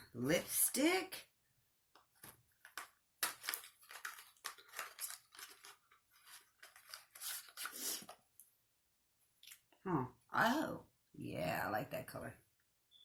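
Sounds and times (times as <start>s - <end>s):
packaging crinkling and tearing: 3.2s - 8.1s.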